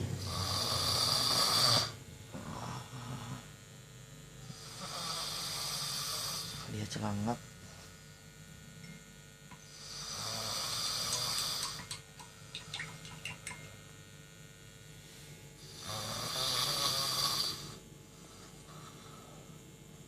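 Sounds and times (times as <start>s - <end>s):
person snoring: 0.0s - 3.6s, 4.4s - 6.8s, 9.7s - 11.8s, 15.6s - 19.6s.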